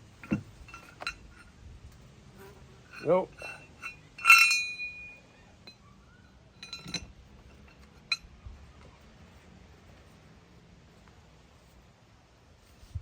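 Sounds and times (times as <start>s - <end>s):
metal parts clinking: 0.2s - 1.5s, 2.9s - 5.8s, 6.6s - 8.2s.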